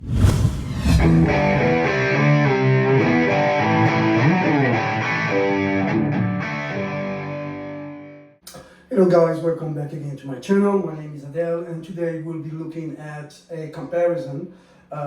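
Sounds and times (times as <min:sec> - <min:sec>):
distorted electric guitar: 0:01.0 - 0:08.3.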